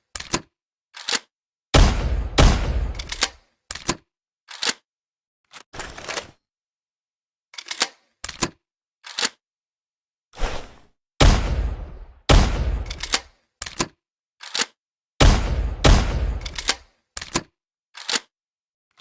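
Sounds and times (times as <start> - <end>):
shotgun blasts: 1.8 - 3.2, 11.2 - 13.1, 15.2 - 16.7
sharp mechanical clicks: 2.4 - 4.8, 12.4 - 14.8, 15.8 - 18.3.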